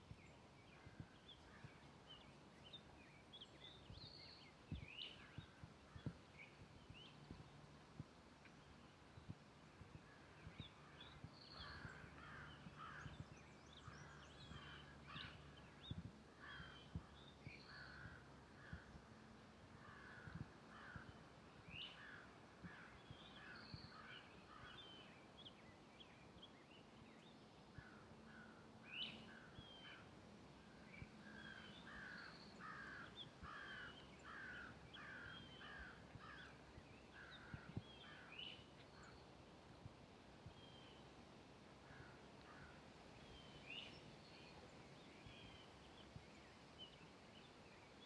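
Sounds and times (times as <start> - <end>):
small birds chirping: 0.0 - 19.1, 19.7 - 41.2, 41.8 - 48.0
crows cawing: 11.6 - 13.2, 19.8 - 21.1, 31.5 - 36.5.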